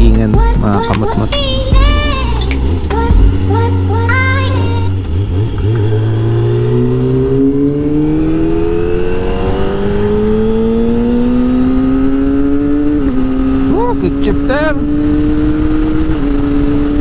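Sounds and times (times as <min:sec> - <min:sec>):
motorcycle engine accelerating: 0:00.0 - 0:17.0.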